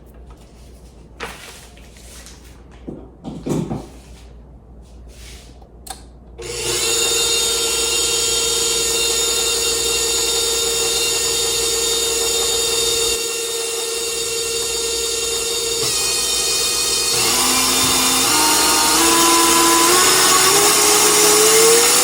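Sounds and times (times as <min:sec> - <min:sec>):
stand mixer motor whine: 0:06.4 - 0:22.0.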